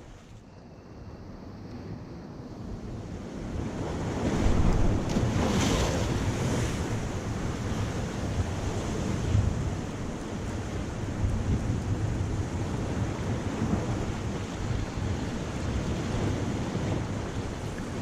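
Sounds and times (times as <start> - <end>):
wind buffeting microphone: 1.0 - 18.0
surf washing against rocks: 3.6 - 18.0.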